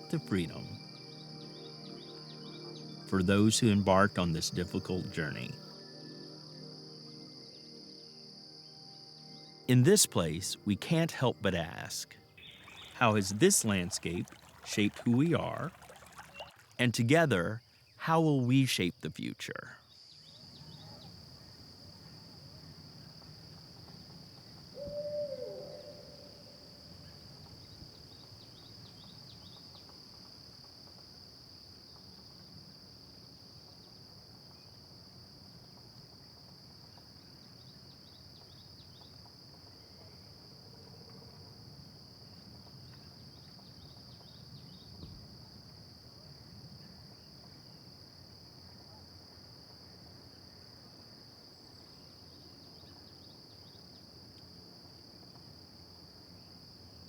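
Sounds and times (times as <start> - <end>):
insects droning: 0.0 - 57.0
faint insect ticks: 19.8 - 45.6.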